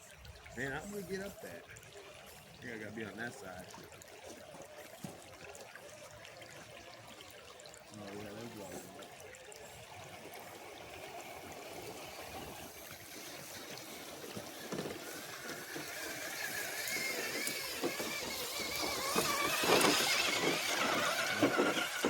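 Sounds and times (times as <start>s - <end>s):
water gurgling: 0.0s - 22.0s
toy car motor and gears whining: 9.8s - 22.0s.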